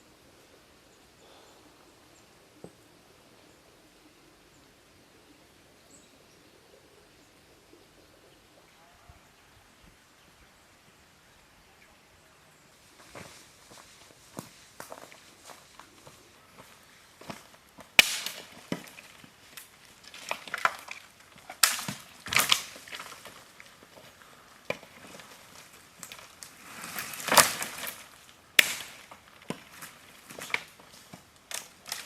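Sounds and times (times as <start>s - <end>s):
brush rustling: 12.8s - 32.0s
dry wood snapping and crunching: 13.1s - 32.0s.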